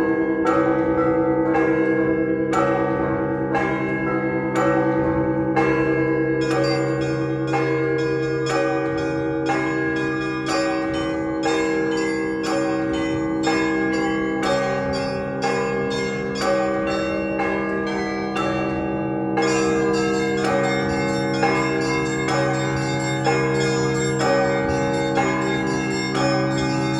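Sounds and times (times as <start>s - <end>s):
deep bell hum: 0.0s - 26.9s
heavy bell strikes: 0.0s - 26.9s
small church bells ringing: 0.0s - 26.9s.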